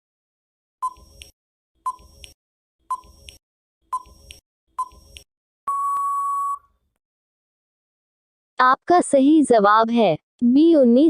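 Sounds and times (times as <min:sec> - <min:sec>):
short electronic beeps: 0:00.8 - 0:01.2, 0:01.9 - 0:02.3, 0:04.8 - 0:06.7
long steady beep: 0:05.7 - 0:06.7.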